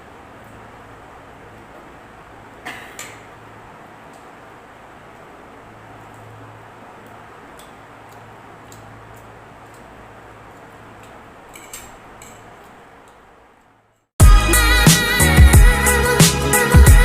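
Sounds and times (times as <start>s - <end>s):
music: 14.2s - 17.0s.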